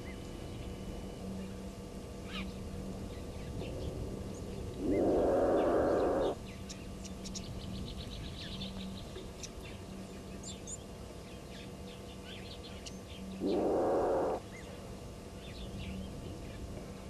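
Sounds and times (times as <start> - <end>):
faint low hum: 0.0 - 17.0
small birds chirping: 2.3 - 14.8.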